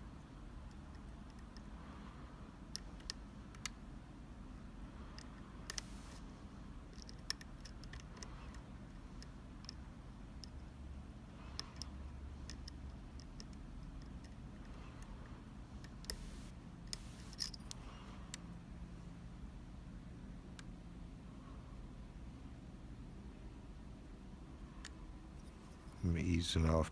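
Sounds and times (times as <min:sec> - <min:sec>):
steady low hum: 0:00.0 - 0:26.9
lock picks clicking in a lock: 0:00.6 - 0:01.7, 0:02.7 - 0:03.8, 0:06.9 - 0:08.6, 0:11.6 - 0:15.2, 0:16.9 - 0:17.8.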